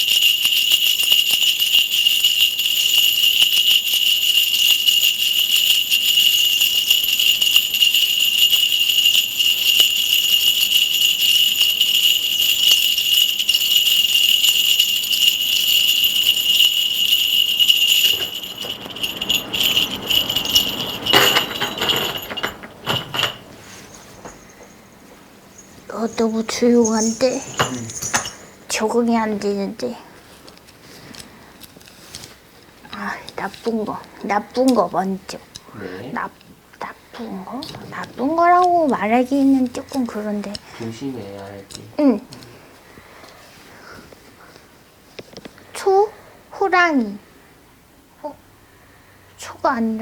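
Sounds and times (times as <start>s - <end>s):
bell cluster jingling: 0.0s - 29.8s.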